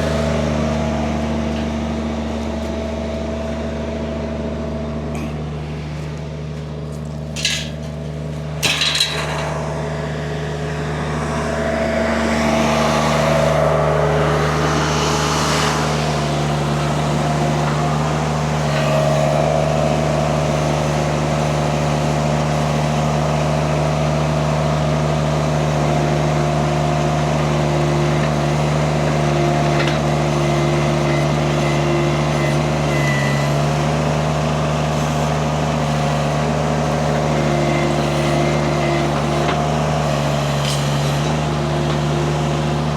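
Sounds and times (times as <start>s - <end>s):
skid steer engine running: 0.0s - 42.9s.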